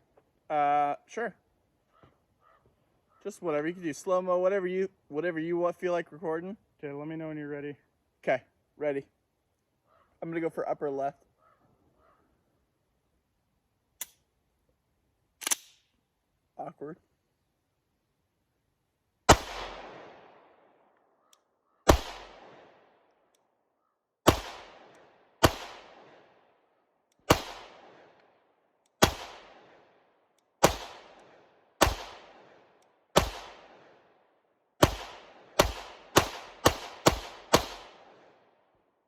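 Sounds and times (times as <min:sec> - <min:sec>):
gunshots with echo: 0:19.3 - 0:20.6, 0:21.9 - 0:22.9, 0:24.2 - 0:26.4, 0:27.3 - 0:28.2, 0:29.0 - 0:29.9, 0:30.6 - 0:34.0, 0:34.8 - 0:38.4.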